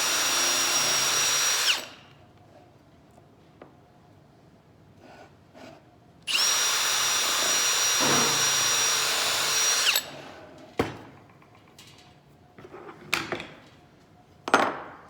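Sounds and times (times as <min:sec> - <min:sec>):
power drill running: 0:00.0 - 0:02.0, 0:06.3 - 0:10.2.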